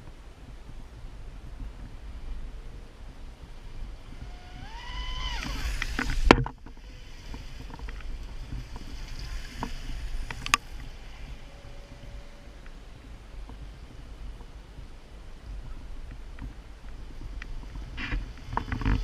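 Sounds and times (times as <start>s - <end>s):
faint steady tone: 0.0s - 19.0s
water noise: 0.0s - 19.0s
rc boat motor whining: 3.9s - 13.0s.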